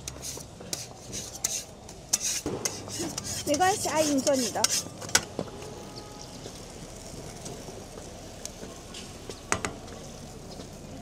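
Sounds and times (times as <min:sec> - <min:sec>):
metal utensils clinking on griddle: 0:00.0 - 0:05.3
market crowd hubbub: 0:00.0 - 0:11.0.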